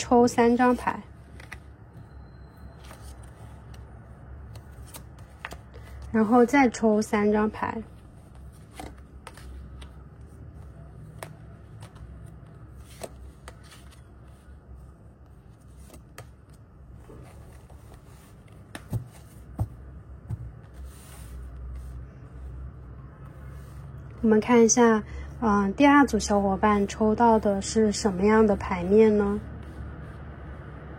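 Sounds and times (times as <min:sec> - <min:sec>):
cards tapping and sliding: 0:01.3 - 0:01.8, 0:02.8 - 0:06.1, 0:08.3 - 0:14.3, 0:15.6 - 0:22.0.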